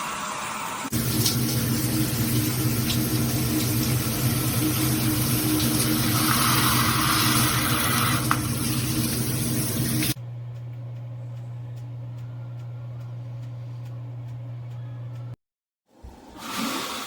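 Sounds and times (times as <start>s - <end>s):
shower water spraying: 0.2s - 10.2s
steady low hum: 8.6s - 15.4s.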